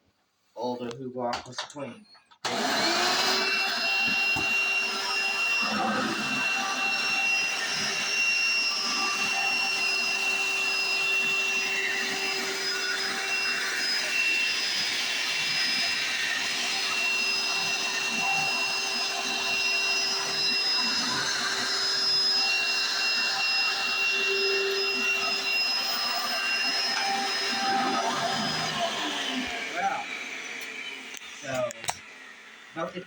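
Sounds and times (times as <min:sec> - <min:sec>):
upright vacuum running: 0:02.4 - 0:33.0.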